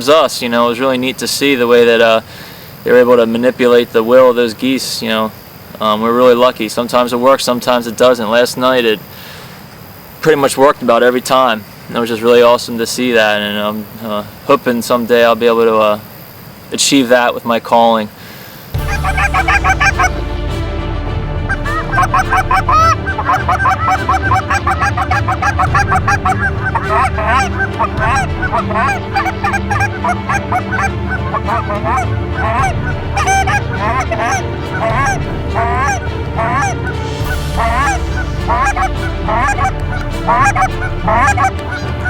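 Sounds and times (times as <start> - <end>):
geese honking and clucking: 18.8 - 20.4, 21.4 - 42.0.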